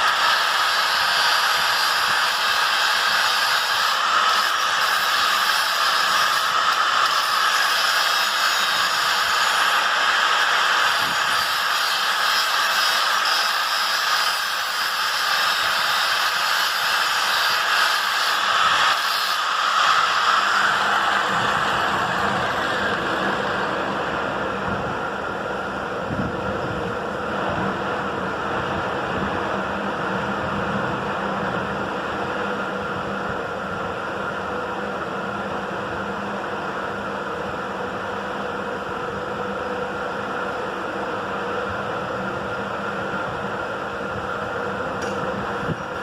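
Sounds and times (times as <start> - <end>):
power tool motor running: 0.0 - 23.8.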